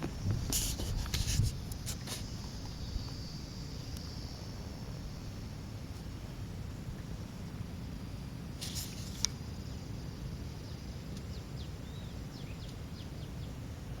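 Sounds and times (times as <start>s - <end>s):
steady low rumble: 0.0s - 8.6s
brief hiss: 0.4s - 3.2s, 8.6s - 9.4s.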